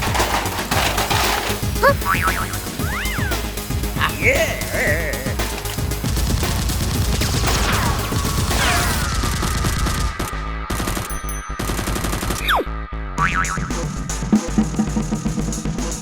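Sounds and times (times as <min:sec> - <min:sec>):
rapid automatic gunfire: 0:05.6 - 0:12.4.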